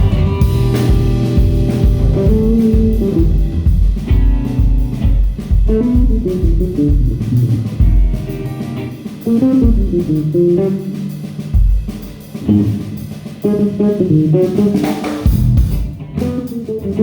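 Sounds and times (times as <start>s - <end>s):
bass line: 0.0s - 11.2s
drum kit beat: 0.0s - 17.0s
guitar melody: 0.0s - 17.0s.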